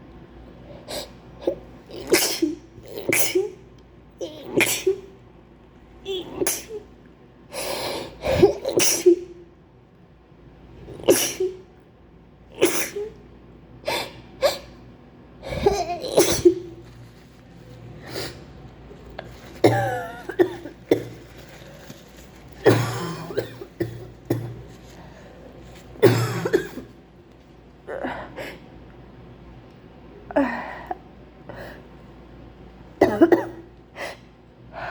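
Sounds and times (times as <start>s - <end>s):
woman sneezing: 1.0s - 3.6s, 4.2s - 5.1s, 6.1s - 6.9s, 8.2s - 9.4s, 11.0s - 11.7s, 12.6s - 13.2s, 15.4s - 16.8s.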